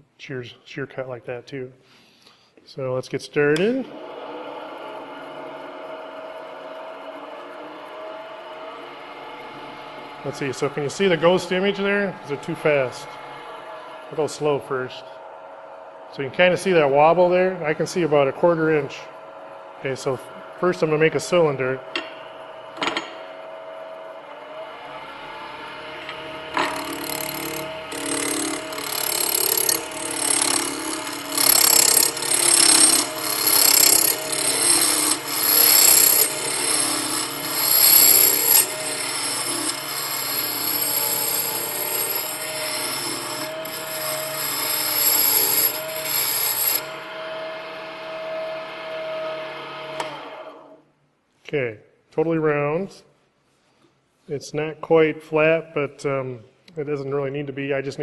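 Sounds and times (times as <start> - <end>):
lathe motor hum: 3.6 - 50.8
gouge scraping wood on lathe: 25.8 - 47.0.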